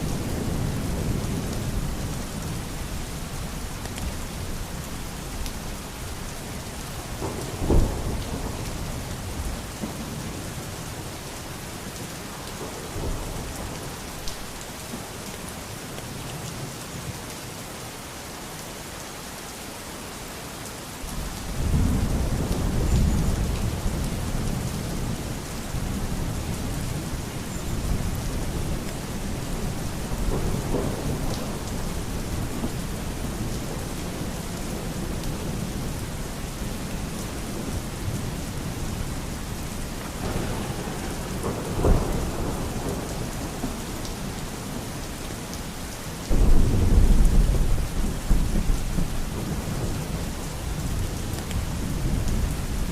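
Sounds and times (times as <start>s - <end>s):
steady rain: 0.0s - 52.9s
rolling thunder rumble: 21.1s - 39.0s, 40.1s - 44.8s, 46.3s - 52.9s
thunder clap: 40.2s - 43.7s, 46.3s - 50.0s.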